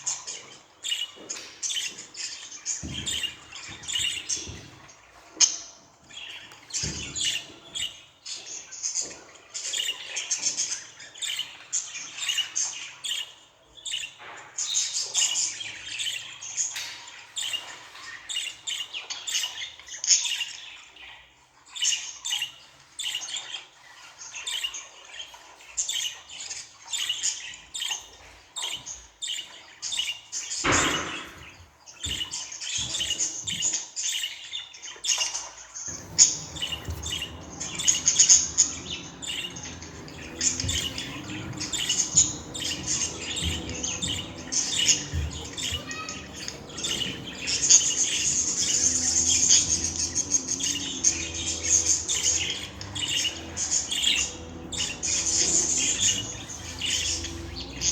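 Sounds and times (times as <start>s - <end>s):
budgerigars chirping: 0.0s - 5.2s, 6.1s - 20.6s, 24.3s - 34.4s, 35.9s - 57.9s.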